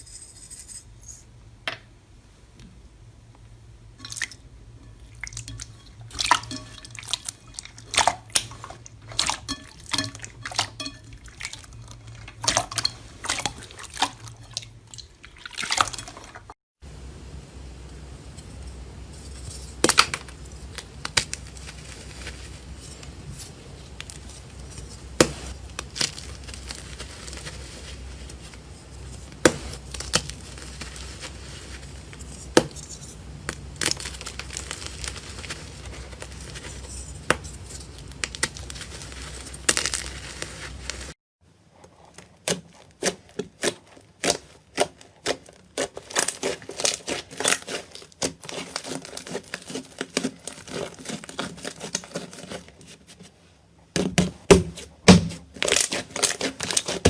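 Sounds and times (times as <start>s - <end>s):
steady low hum: 16.8s - 38.7s.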